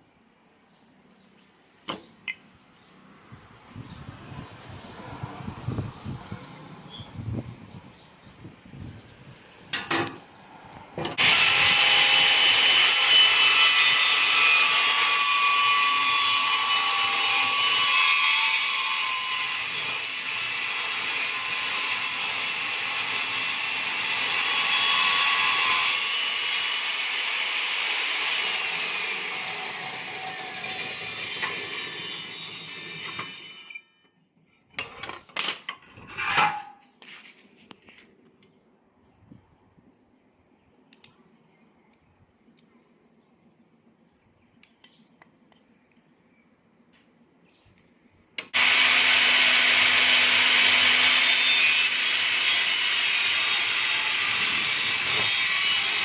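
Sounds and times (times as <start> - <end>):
power saw cutting wood: 11.2 - 33.7, 48.4 - 56.0.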